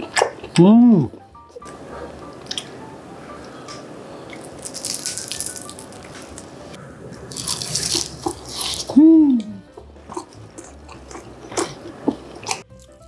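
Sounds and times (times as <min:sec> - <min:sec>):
person humming mmm: 0:00.5 - 0:01.2, 0:08.2 - 0:12.6
wet slurping and chewing: 0:03.7 - 0:12.7.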